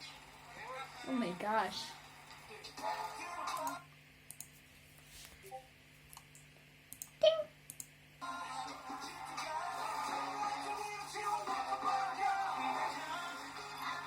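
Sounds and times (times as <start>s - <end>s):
sharp clicks: 3.6s - 4.5s, 6.1s - 8.0s.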